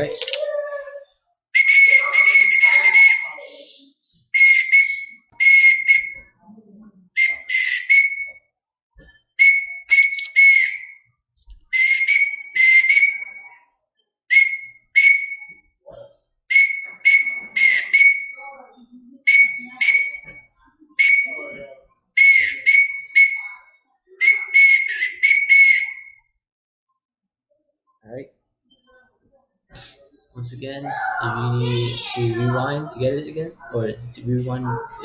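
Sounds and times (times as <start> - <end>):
whistle blasts in morse code: 1.6 - 3.4, 4.4 - 6.2, 7.2 - 8.4, 9.4 - 11.1, 11.8 - 13.6, 14.3 - 15.6, 16.5 - 18.5, 19.3 - 21.6, 22.2 - 26.3.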